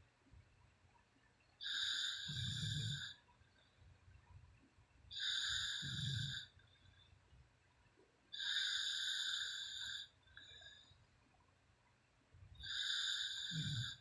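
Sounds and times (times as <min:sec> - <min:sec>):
woman snoring: 0:01.6 - 0:03.2, 0:05.2 - 0:06.5, 0:08.4 - 0:10.1, 0:12.6 - 0:14.0.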